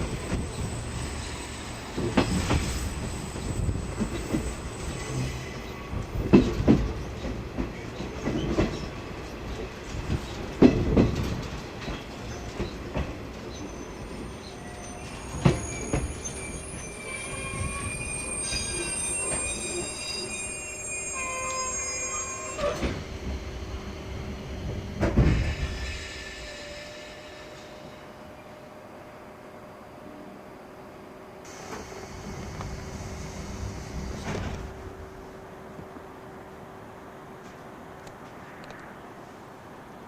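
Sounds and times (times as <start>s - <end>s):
high squeal: 0.0s - 6.0s, 13.5s - 24.1s
train coach rumbling: 0.0s - 28.7s, 31.4s - 38.8s.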